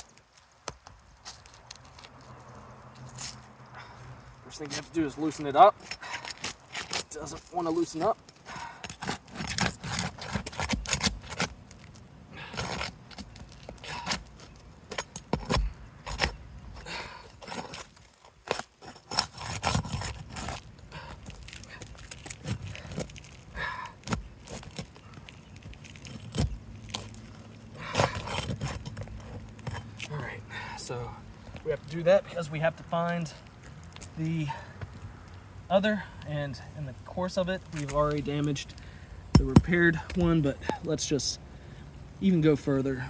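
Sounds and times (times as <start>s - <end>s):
tool scraping under roof shingles: 4.5s - 30.2s.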